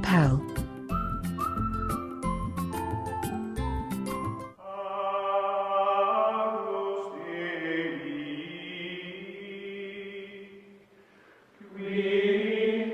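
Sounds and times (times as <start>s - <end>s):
chant-like choral voices: 4.6s - 10.8s, 11.6s - 12.9s.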